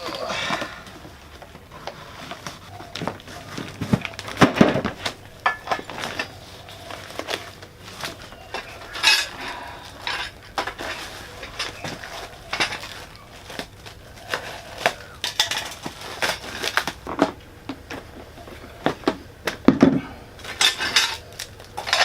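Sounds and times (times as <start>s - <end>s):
metal parts clinking: 3.4s - 17.4s, 20.4s - 22.0s.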